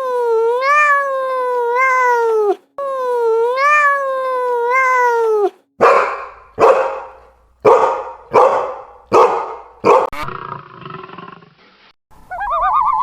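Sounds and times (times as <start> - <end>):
dog barking: 5.8 - 10.2.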